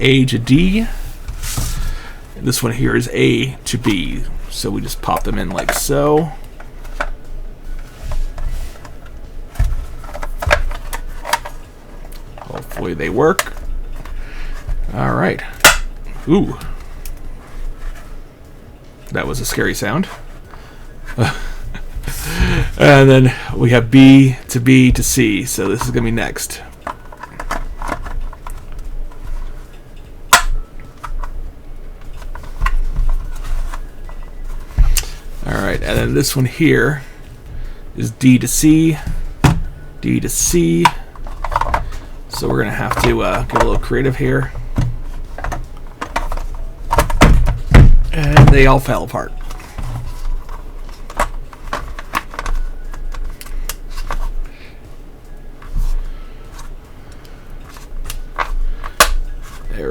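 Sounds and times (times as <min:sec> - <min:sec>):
plastic parts clicking and knocking: 0:05.0 - 0:07.2, 0:08.3 - 0:15.0, 0:24.9 - 0:31.4, 0:32.0 - 0:35.2, 0:38.5 - 0:54.6, 0:55.6 - 0:59.7
plastic snapping together: 0:30.3 - 0:31.3, 0:57.1 - 0:59.6.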